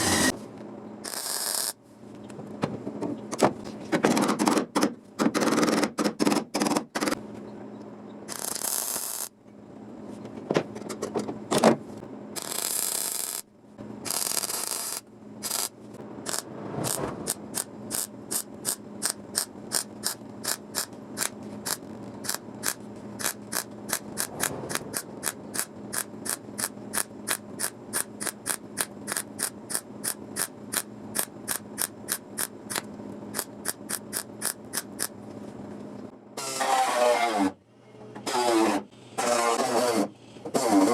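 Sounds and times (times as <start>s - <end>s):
short rushes of noise: 16.2s - 17.6s
sharp mechanical clicks: 16.3s - 35.2s.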